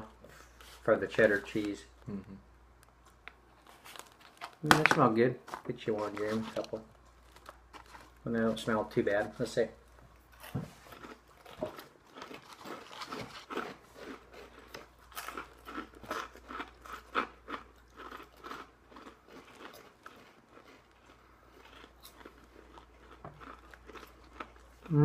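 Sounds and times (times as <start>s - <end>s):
crunchy puffs chewed: 10.1s - 25.0s.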